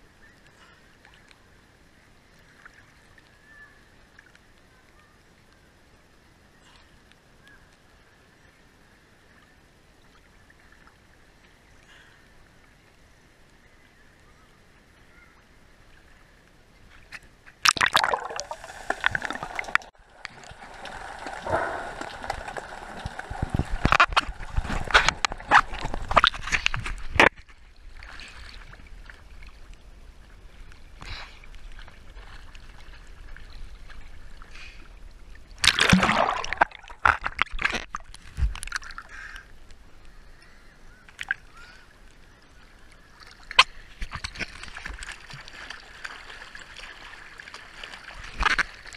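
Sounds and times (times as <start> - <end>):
water sloshing and splashing: 16.9 - 29.8, 30.4 - 39.2, 43.2 - 48.9
water lapping: 17.6 - 37.8, 41.2 - 48.9.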